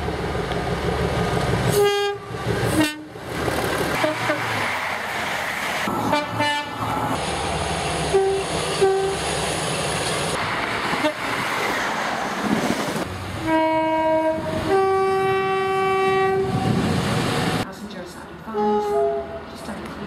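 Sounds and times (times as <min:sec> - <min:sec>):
train running noise: 0:00.0 - 0:20.0
train horn: 0:01.7 - 0:03.1, 0:04.0 - 0:04.4, 0:06.0 - 0:06.8, 0:08.1 - 0:09.2, 0:13.4 - 0:16.8, 0:18.5 - 0:19.4.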